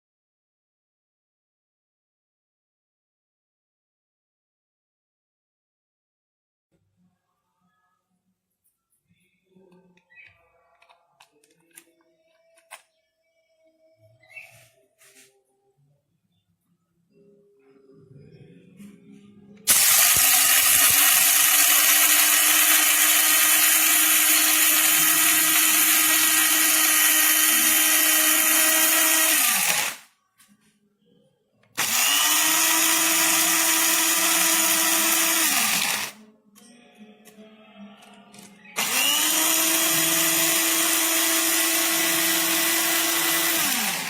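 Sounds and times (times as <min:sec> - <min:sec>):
coffee grinder motor whine: 0:19.7 - 0:30.0, 0:31.8 - 0:36.2, 0:38.8 - 0:44.0.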